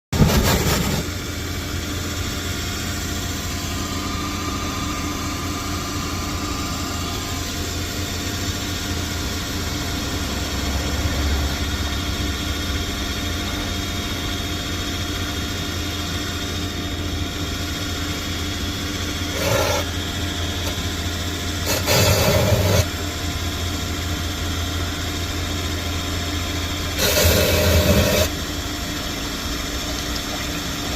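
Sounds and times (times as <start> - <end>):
short noisy bursts: 19.3 - 20.0, 21.6 - 22.9, 27.0 - 28.4.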